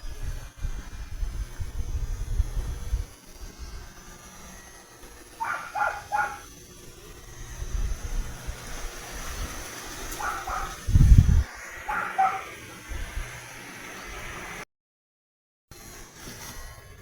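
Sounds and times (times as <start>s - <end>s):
dog barking: 5.4s - 6.5s, 10.2s - 10.8s, 11.9s - 12.5s.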